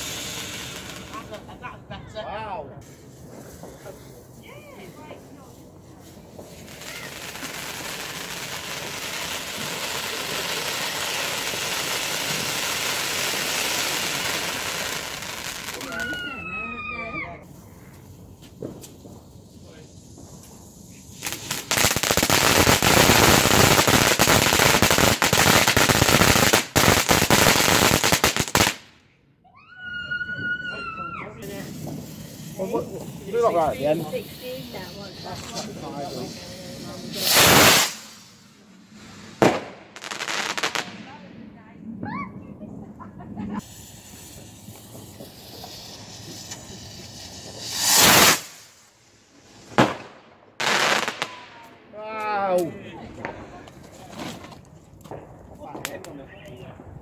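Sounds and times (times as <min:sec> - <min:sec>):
firecracker bangs crackling: 0:00.0 - 0:01.4, 0:02.8 - 0:16.4, 0:18.4 - 0:28.9, 0:31.4 - 0:41.2, 0:43.6 - 0:52.3.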